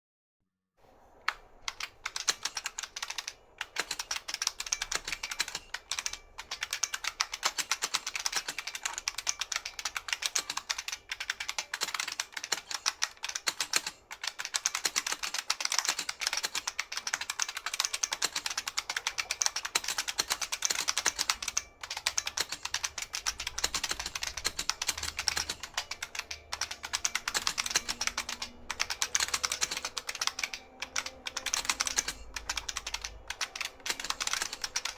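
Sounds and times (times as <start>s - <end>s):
fast typing on mechanical keyboard: 1.3s - 34.9s.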